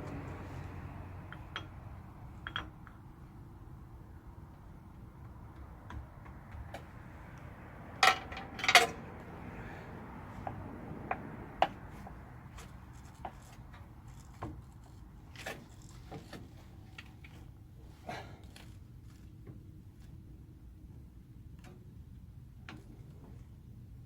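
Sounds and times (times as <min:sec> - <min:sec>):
metal clinks and knocks: 0:01.3 - 0:03.0, 0:08.0 - 0:09.1.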